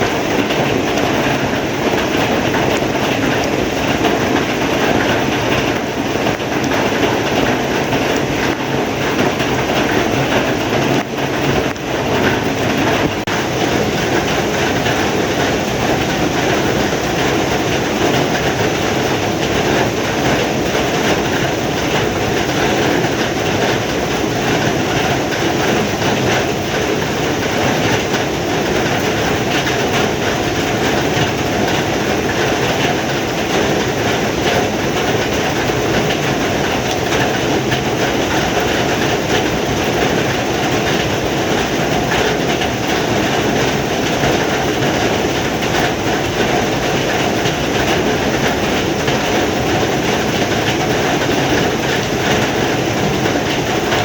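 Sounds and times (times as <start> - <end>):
heavy rain falling: 0.0 - 54.0.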